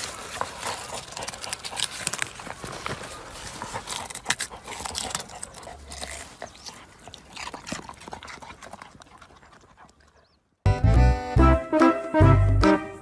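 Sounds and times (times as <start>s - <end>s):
music: 10.7s - 13.0s.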